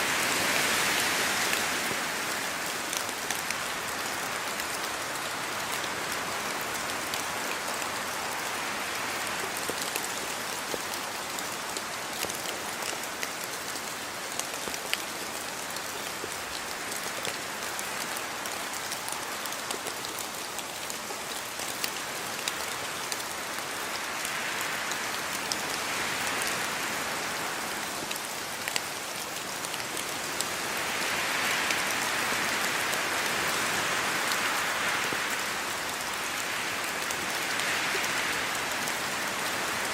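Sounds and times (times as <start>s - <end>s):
rain falling: 0.0s - 39.9s
raindrops pattering on surface: 1.4s - 26.9s.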